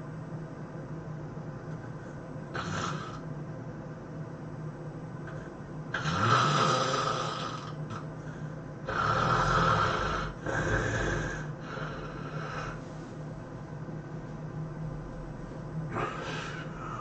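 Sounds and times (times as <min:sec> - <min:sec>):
person snoring heavily: 0:02.5 - 0:03.2, 0:05.3 - 0:08.0, 0:08.9 - 0:12.8, 0:15.9 - 0:17.0.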